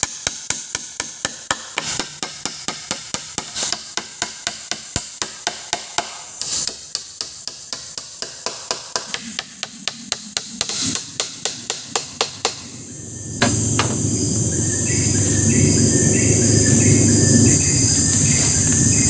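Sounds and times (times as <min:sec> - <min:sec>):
hand tool striking wood: 0:00.0 - 0:12.6, 0:13.4 - 0:14.0.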